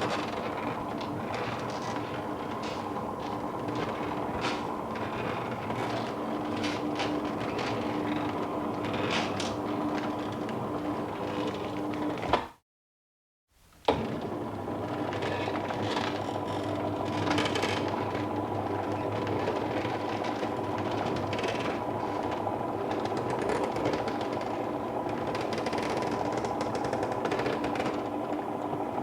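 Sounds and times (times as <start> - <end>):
roller shutter motor hum: 0.0 - 12.4, 13.9 - 29.0.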